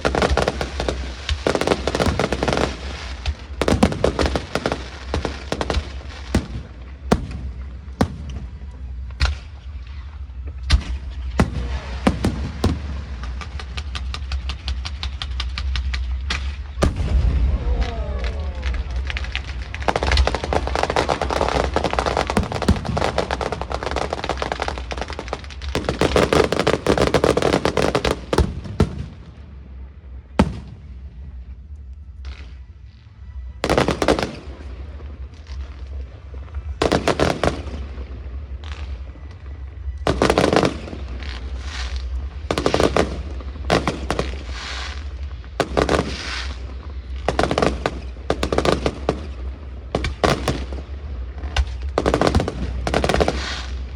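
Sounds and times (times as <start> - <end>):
fireworks crackling: 0.0 - 53.9
sharp crack: 10.6 - 29.2.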